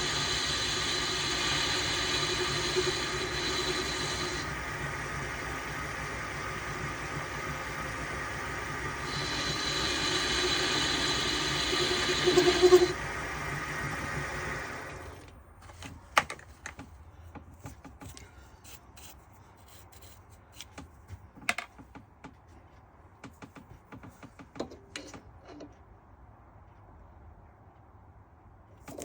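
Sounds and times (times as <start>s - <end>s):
motor winding down: 0.0s - 15.3s.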